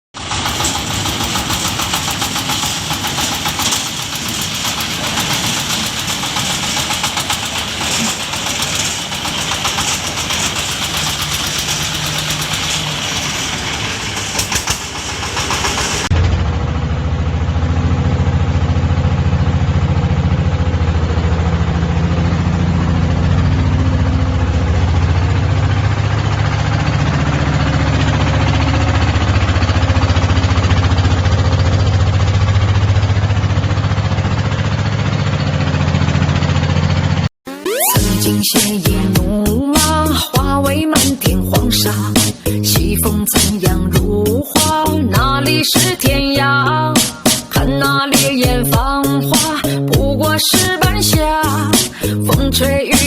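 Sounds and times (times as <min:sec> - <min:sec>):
diesel engine clattering: 0:00.2 - 0:37.3, 0:38.0 - 0:53.0.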